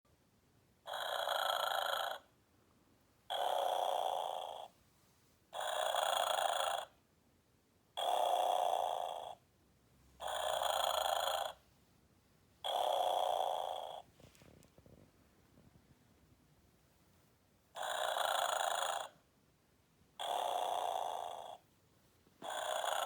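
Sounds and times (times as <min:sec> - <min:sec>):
toy snoring: 0:00.9 - 0:02.3, 0:03.3 - 0:04.7, 0:05.6 - 0:07.0, 0:08.0 - 0:09.4, 0:10.2 - 0:11.6, 0:12.6 - 0:14.1, 0:17.8 - 0:19.2, 0:20.2 - 0:21.6, 0:22.4 - 0:23.0.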